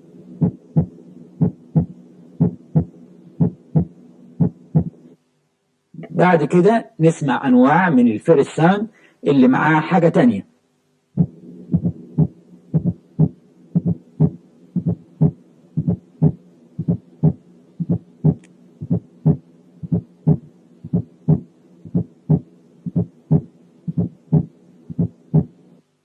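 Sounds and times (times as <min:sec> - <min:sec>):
faint steady hum: 0:00.0 - 0:26.0
heartbeat: 0:00.4 - 0:05.0, 0:11.2 - 0:25.6.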